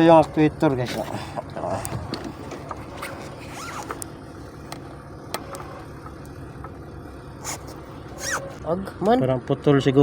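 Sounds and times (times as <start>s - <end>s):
diesel engine idling: 4.0s - 10.0s.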